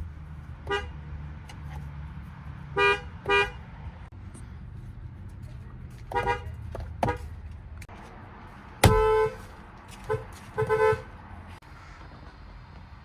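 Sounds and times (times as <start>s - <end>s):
car horn honking: 0.6s - 1.0s, 2.8s - 3.6s, 6.1s - 7.3s, 8.8s - 11.1s.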